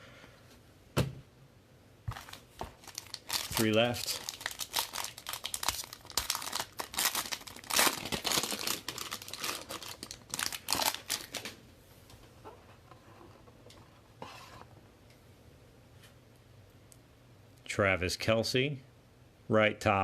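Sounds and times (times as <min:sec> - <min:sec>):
plastic wrapping crinkling and tearing: 0:02.1 - 0:11.6.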